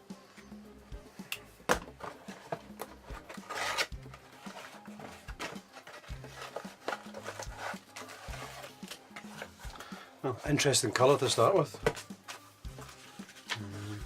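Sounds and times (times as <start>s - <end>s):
faint background music: 0.0s - 14.0s
plastic kit rustling and clicking: 1.7s - 9.8s.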